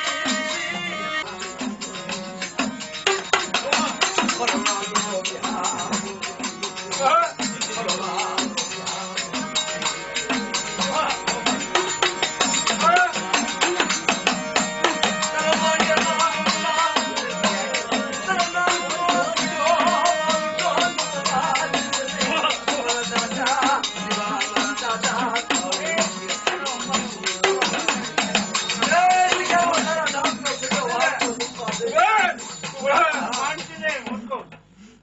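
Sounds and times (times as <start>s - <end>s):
fast folk percussion: 0.0s - 34.7s.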